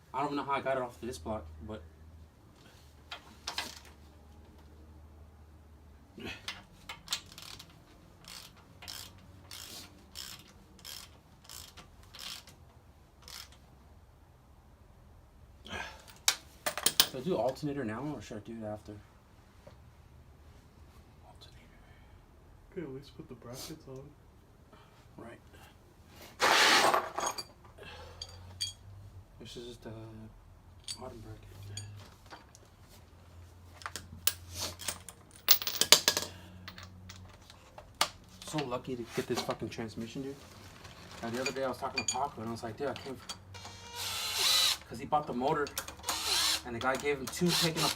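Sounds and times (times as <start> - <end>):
ratchet wrench ratcheting: 7.1 - 12.6, 13.2 - 13.6, 43.3 - 44.9, 45.7 - 47.9.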